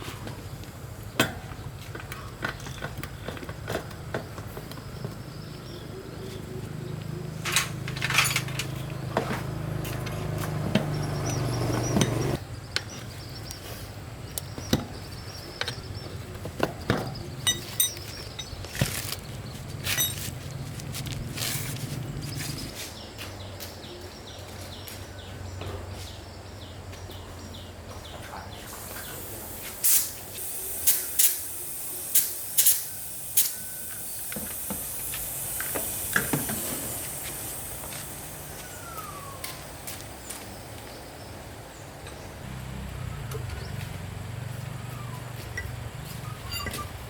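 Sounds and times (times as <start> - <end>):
metal tools clinking on metal: 7.4 - 9.1, 9.9 - 12.4, 17.3 - 19.2, 19.8 - 20.6, 45.5 - 47.0.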